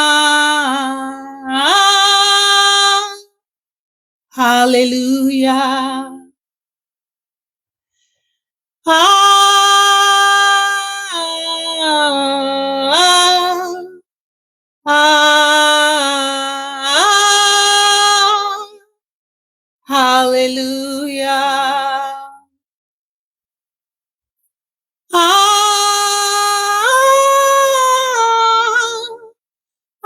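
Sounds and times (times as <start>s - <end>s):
person singing unaccompanied: 0.0s - 3.3s, 4.4s - 6.4s, 8.9s - 14.1s, 14.9s - 18.8s, 19.9s - 22.5s, 25.1s - 29.4s.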